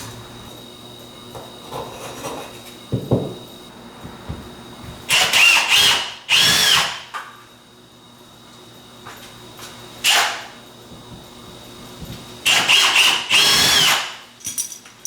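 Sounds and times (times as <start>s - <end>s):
power drill motor whine: 5.1s - 7.2s, 10.0s - 10.5s, 12.4s - 14.2s.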